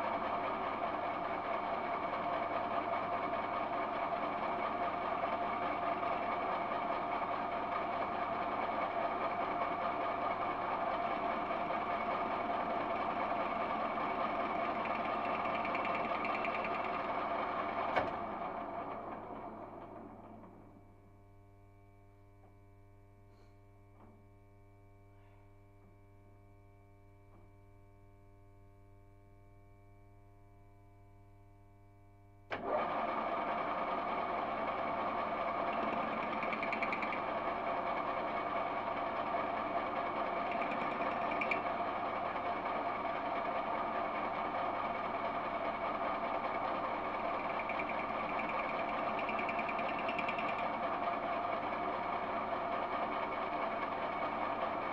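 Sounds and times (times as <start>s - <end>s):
lathe gear-train whirring: 0.0s - 20.7s, 32.5s - 54.9s
metal lathe spinning down: 0.0s - 20.8s, 32.5s - 54.9s.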